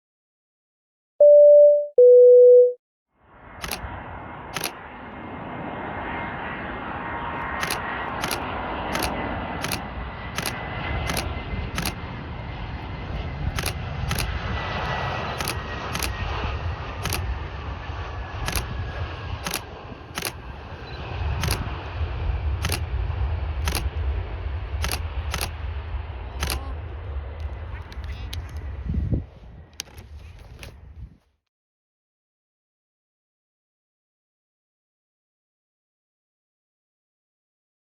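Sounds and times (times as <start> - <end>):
short electronic beeps: 1.2 - 2.8
jet engines whining: 3.3 - 30.0
camera shutter clicks: 3.6 - 3.9, 4.6 - 4.8, 7.4 - 9.8, 10.4 - 12.0, 13.5 - 16.2, 17.0 - 17.3, 18.5 - 18.7, 19.4 - 20.4, 21.4 - 21.7, 22.6 - 22.8, 23.6 - 23.9, 24.8 - 25.6, 26.4 - 26.7
low rumble: 9.3 - 29.8.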